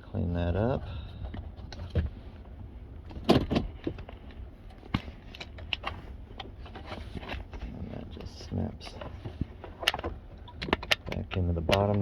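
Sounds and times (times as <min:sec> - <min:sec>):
light plastic clicks and knocks: 0:09.0 - 0:12.0.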